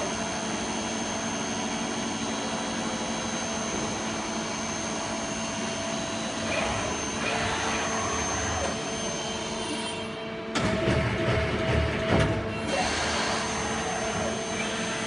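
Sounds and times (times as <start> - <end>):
high steady machine whine: 0.0 - 15.0.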